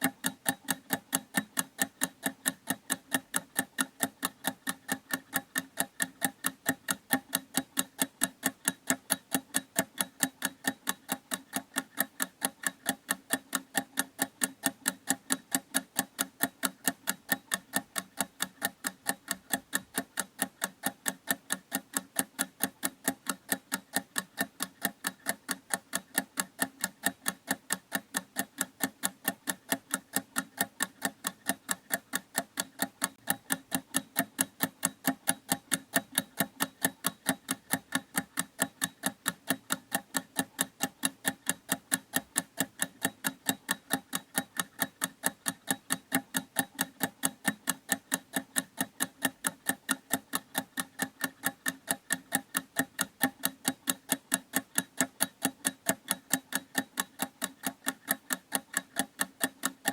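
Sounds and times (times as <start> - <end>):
clock ticking: 0.0 - 59.9.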